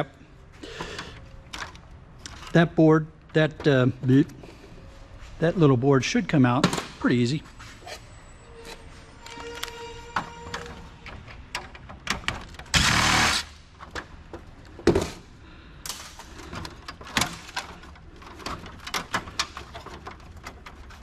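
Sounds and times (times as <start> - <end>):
plastic and metal rattling: 16.2 - 21.0.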